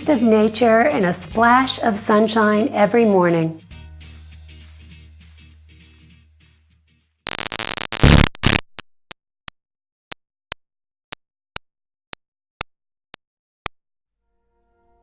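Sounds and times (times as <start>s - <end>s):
crackling static burst: 7.3s - 8.8s.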